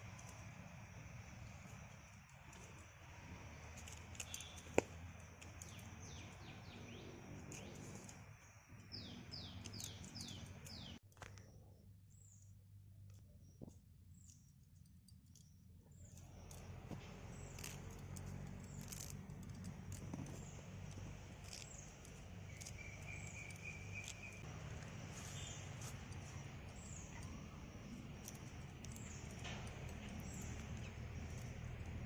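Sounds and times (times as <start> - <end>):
low steady hum: 0.0 - 32.0
birds chirping: 4.1 - 4.8, 5.4 - 11.0, 20.2 - 32.0
bird trill: 4.2 - 4.8, 8.8 - 11.0, 21.4 - 24.5.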